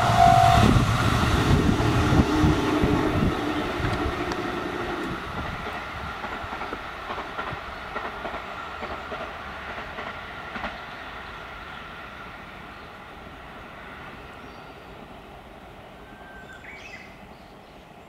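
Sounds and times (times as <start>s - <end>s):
electric train running past: 0.0s - 18.0s
wheels clicking over rail joints: 3.8s - 11.0s.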